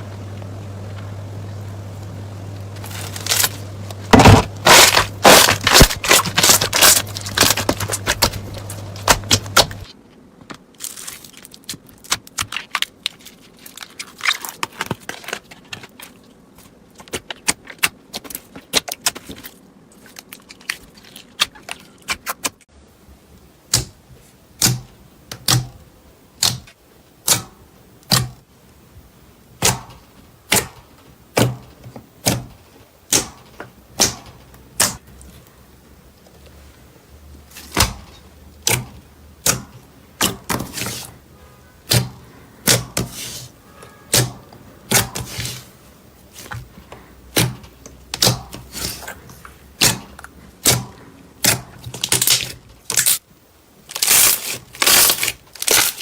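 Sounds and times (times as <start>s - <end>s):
slime crackling and popping: 2.8s - 9.9s, 53.8s - 56.0s.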